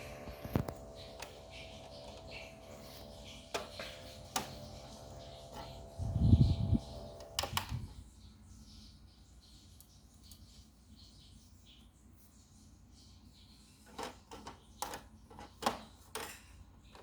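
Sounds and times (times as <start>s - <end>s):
small fan motor humming: 0.0s - 11.4s.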